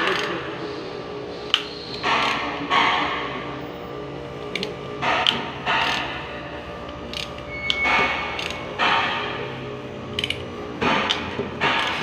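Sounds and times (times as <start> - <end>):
ratchet wrench clicking: 0.0 - 0.4, 1.5 - 2.4, 4.5 - 6.2, 7.0 - 8.7, 10.2 - 12.0.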